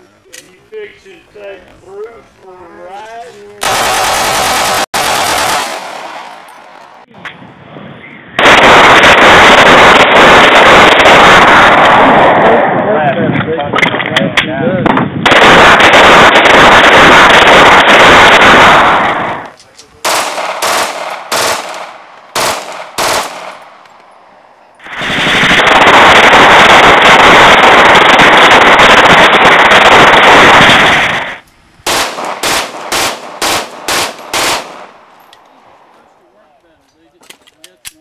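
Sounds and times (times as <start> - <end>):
pistol automatic fire: 3.6 - 6.4, 8.4 - 12.5, 15.2 - 19.4, 20.0 - 23.6, 24.8 - 35.0.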